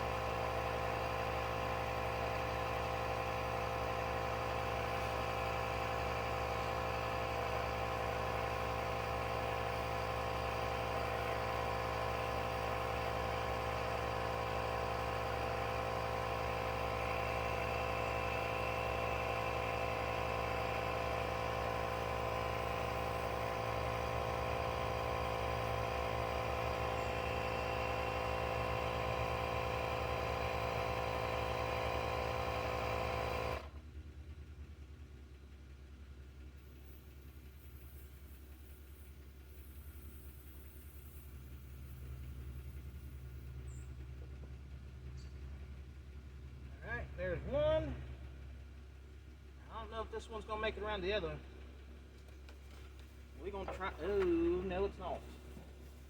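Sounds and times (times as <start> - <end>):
car engine idling: 0.0 - 37.0, 38.6 - 56.0.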